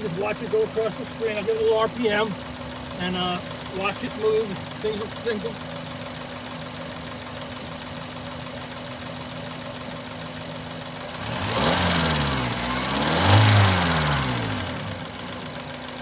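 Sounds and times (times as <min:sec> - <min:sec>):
car engine revving: 0:00.0 - 0:06.2, 0:11.0 - 0:15.9
car engine idling: 0:00.0 - 0:16.0.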